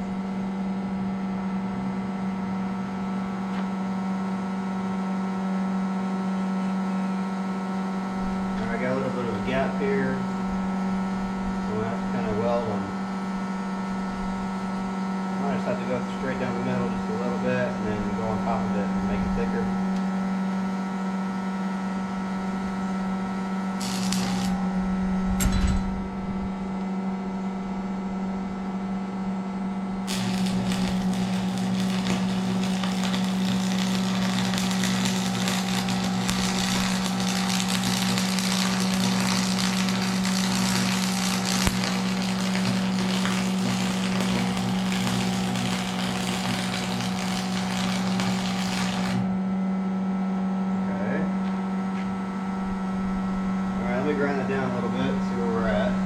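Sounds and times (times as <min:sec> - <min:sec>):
steady electrical hum: 0:00.0 - 0:56.0
arc welding crackle: 0:23.7 - 0:24.8, 0:30.0 - 0:49.3.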